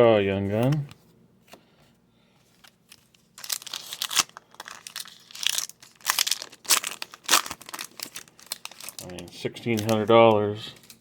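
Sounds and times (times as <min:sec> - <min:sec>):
plastic wrapper crinkling: 0:02.6 - 0:11.0.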